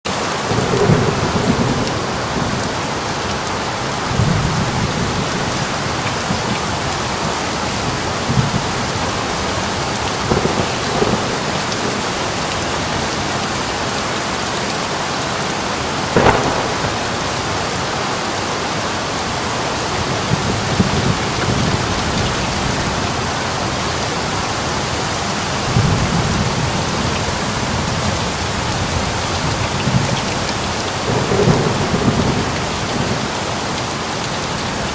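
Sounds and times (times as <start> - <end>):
heavy rain pouring: 0.1 - 34.9
sharp thunder crack: 0.5 - 3.1, 10.2 - 13.0, 16.1 - 18.4, 31.1 - 33.4
thunder rumbling: 0.5 - 13.8, 15.8 - 23.8, 24.8 - 34.9.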